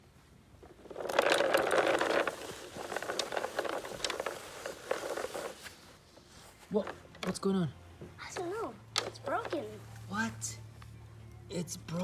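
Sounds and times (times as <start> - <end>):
toy lawn mower clattering: 0.8 - 5.6, 8.4 - 9.7.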